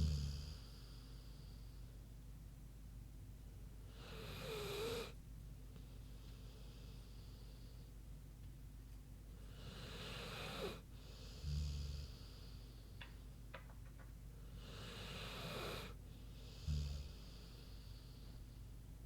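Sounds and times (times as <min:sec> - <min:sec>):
dog snoring: 0:00.0 - 0:00.9, 0:03.9 - 0:05.2, 0:09.5 - 0:12.6, 0:14.5 - 0:18.2.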